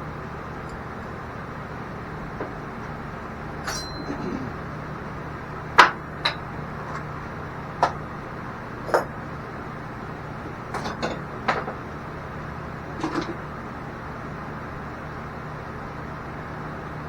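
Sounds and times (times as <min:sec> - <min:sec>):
steady low hum: 0:00.0 - 0:17.0
metal parts knocking and clinking: 0:03.6 - 0:04.4.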